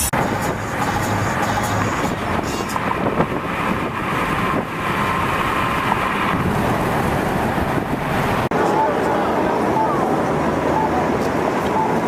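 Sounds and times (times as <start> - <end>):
moving vehicle rushing noise: 0.0 - 12.0
wind on microphone: 0.2 - 8.5.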